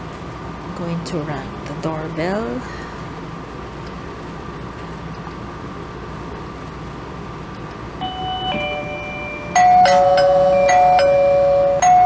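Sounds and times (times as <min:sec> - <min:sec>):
doorbell ding-dong chime: 0:08.0 - 0:12.0.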